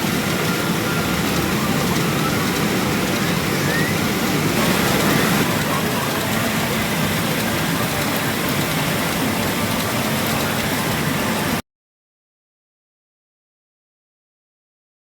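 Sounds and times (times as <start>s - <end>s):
din of pachinko machines: 0.0s - 11.6s.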